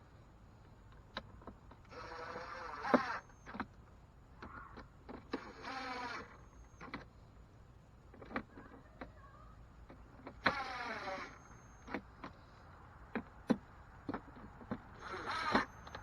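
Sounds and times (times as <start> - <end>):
cordless drill motor whine: 1.8 - 3.7, 5.3 - 7.1, 10.4 - 12.0, 15.0 - 16.0.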